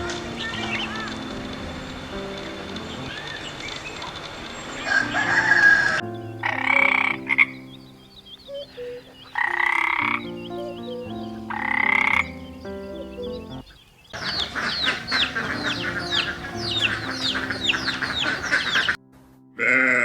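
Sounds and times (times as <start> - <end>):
frog croaking: 0.0 - 19.0
high chirping chorus: 0.0 - 19.0
soft background music: 0.0 - 20.0.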